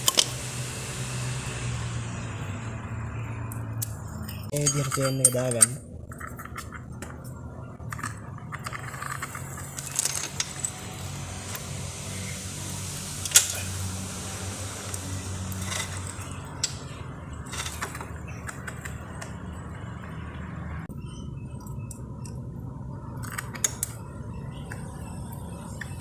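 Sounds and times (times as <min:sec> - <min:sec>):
metal chain links clinking: 0:04.2 - 0:06.4, 0:08.6 - 0:11.1.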